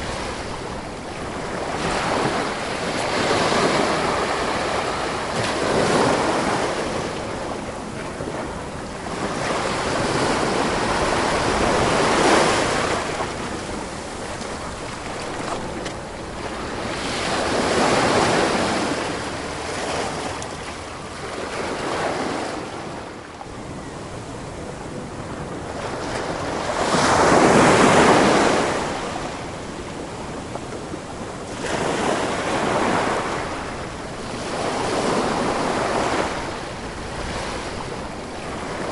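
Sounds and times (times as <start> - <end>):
ocean waves breaking on shore: 0.0 - 38.9
wind noise: 0.0 - 38.9.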